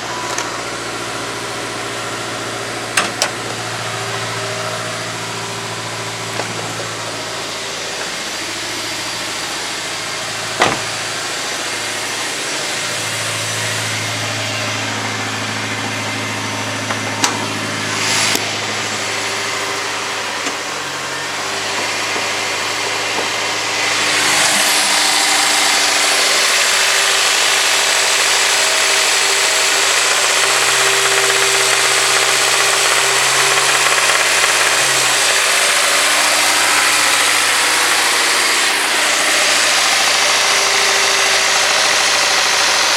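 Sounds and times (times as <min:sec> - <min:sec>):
car engine knocking: 0:25.6 - 0:38.3.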